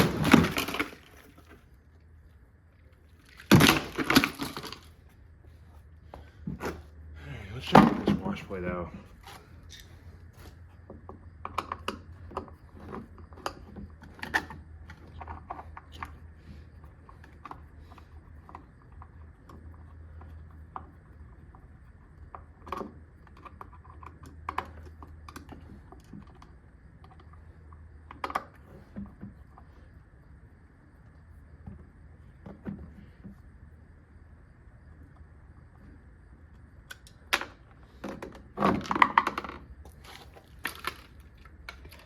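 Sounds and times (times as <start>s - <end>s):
steady low hum: 0.0s - 42.0s
clicks and knocks of plastic parts: 7.6s - 29.8s, 36.8s - 42.0s.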